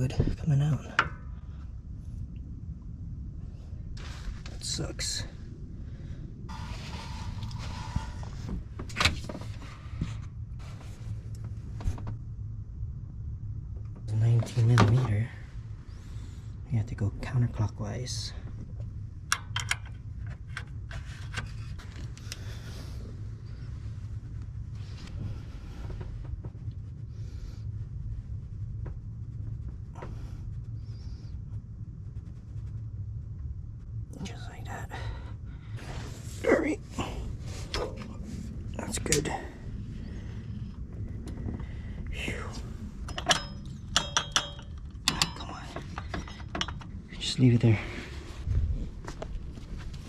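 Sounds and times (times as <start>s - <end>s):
steady low hum: 0.0s - 50.0s
tools knocking on metal: 43.1s - 46.8s.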